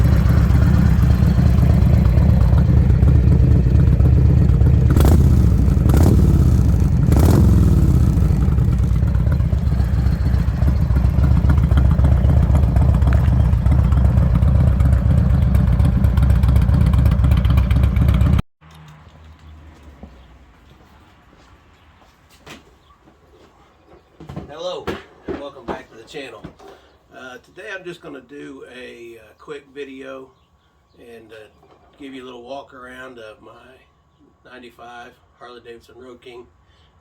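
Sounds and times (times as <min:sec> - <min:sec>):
motorcycle engine running: 0:00.0 - 0:18.4
motorcycle throttle blips: 0:00.0 - 0:18.4.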